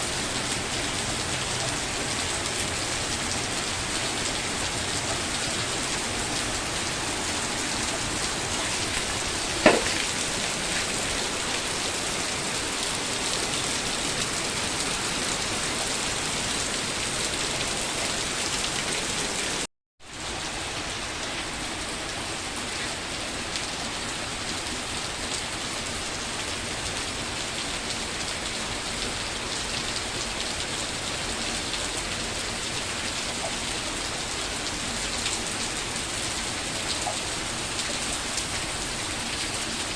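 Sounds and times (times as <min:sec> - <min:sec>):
rain pattering: 0:00.0 - 0:39.9
sharp tap: 0:09.6 - 0:10.2.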